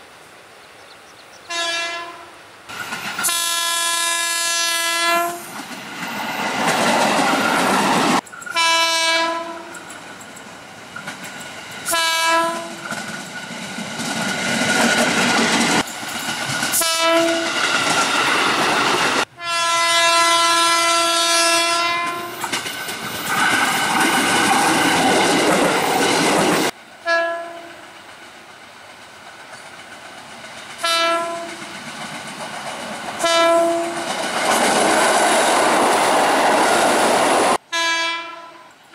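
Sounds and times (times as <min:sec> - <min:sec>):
passing trains: 0:00.0 - 0:38.9
train horn blasts: 0:01.5 - 0:02.4, 0:03.2 - 0:05.6, 0:08.5 - 0:09.8, 0:11.9 - 0:12.9, 0:16.8 - 0:17.6, 0:19.4 - 0:22.4, 0:27.0 - 0:27.8, 0:30.8 - 0:31.6, 0:33.2 - 0:34.1, 0:37.6 - 0:38.8.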